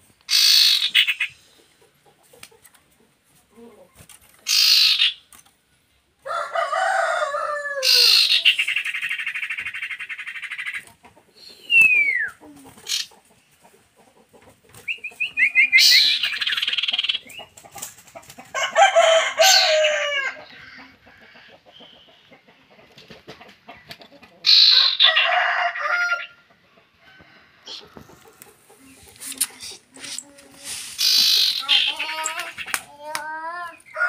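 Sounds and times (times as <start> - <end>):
falling bird whistle: 11.4 - 12.4
harsh low bird calls: 14.8 - 17.5, 28.9 - 33.1
buzzy bird trill: 29.6 - 32.8.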